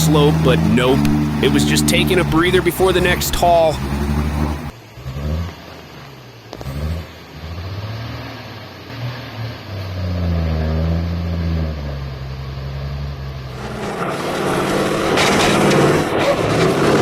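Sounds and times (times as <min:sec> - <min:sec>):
truck engine labouring: 0:00.0 - 0:17.0
loud rushing noise: 0:13.5 - 0:17.0.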